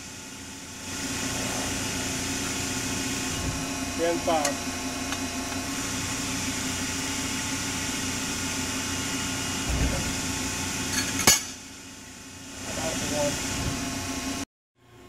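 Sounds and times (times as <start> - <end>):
hydraulic press hum: 0.0 - 15.0
low thud: 9.7 - 10.1
sharp metal clank: 10.9 - 11.6.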